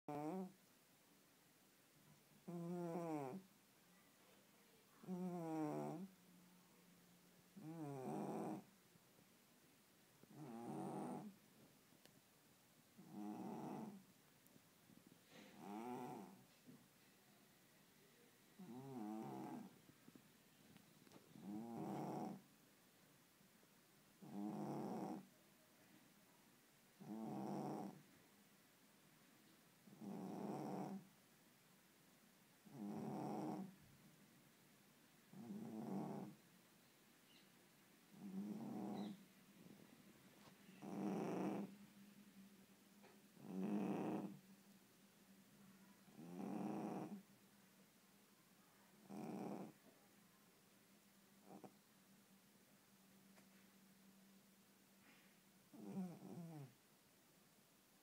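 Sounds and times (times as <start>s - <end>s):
cat snoring: 0.1s - 0.6s, 2.4s - 3.4s, 5.0s - 6.1s, 7.6s - 8.7s, 10.2s - 11.4s, 13.0s - 14.0s, 15.3s - 16.4s, 18.6s - 19.8s, 21.0s - 22.4s, 24.2s - 25.3s, 27.0s - 28.0s, 29.8s - 31.1s, 32.6s - 33.8s, 35.3s - 36.4s, 38.1s - 39.8s, 40.7s - 41.8s, 43.4s - 44.4s, 46.1s - 47.2s, 49.0s - 49.8s, 51.4s - 51.7s, 55.0s - 56.8s.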